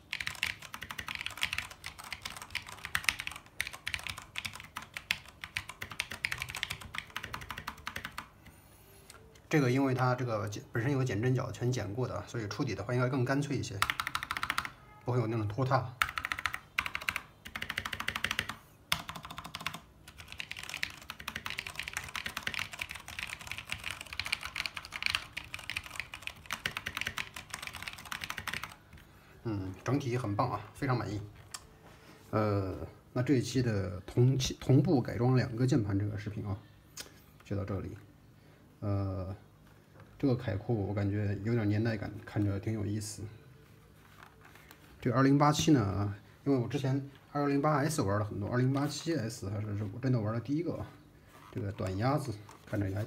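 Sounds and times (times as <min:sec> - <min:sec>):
mechanical keyboard typing: 0:00.0 - 0:08.3, 0:13.8 - 0:14.7, 0:16.0 - 0:28.8.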